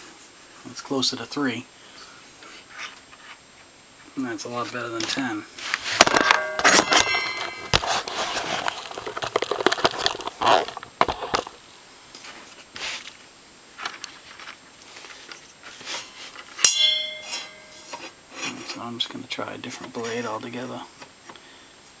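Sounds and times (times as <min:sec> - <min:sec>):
tools and parts clattering: 0:04.7 - 0:11.6, 0:13.8 - 0:18.8.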